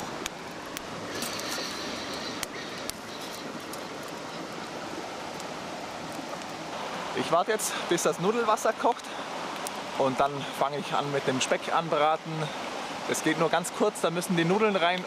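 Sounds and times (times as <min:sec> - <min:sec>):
fire pops and crackles: 0:00.0 - 0:06.7, 0:08.8 - 0:10.0
campfire burning with hiss: 0:00.0 - 0:15.0.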